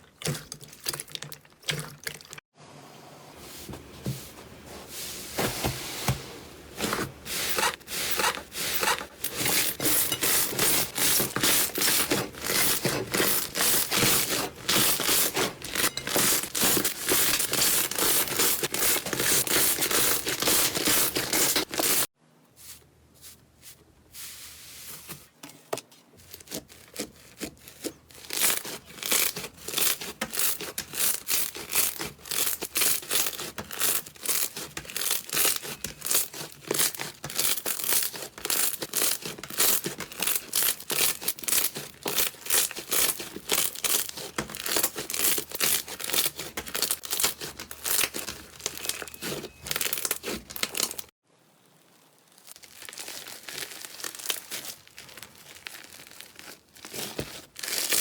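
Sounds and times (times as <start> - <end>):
slime crackling and popping: 49.7 - 58.0.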